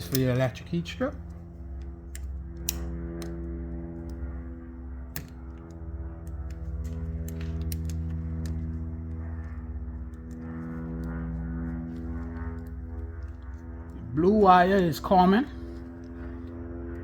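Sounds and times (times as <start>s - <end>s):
low hum: 0.0s - 17.0s
screwdriver clicks and taps: 1.3s - 4.2s, 5.1s - 11.2s.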